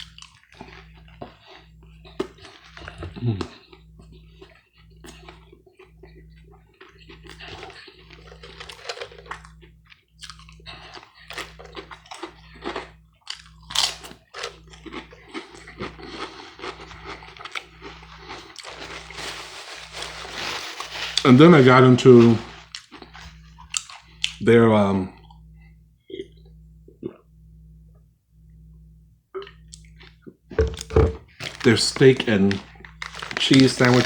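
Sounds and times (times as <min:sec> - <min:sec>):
crisp chewing crunches: 0:00.0 - 0:24.4, 0:29.4 - 0:34.0.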